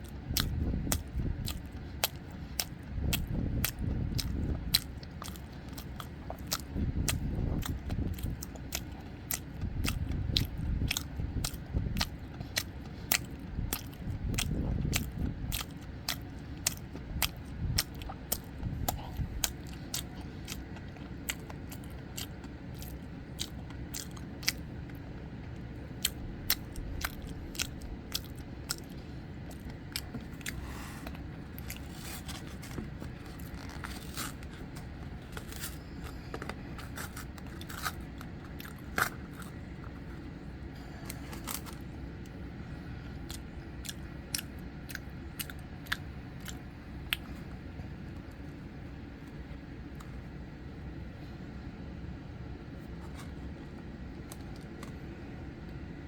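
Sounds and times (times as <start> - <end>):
chewing bread: 0.0 - 51.6, 52.6 - 56.0.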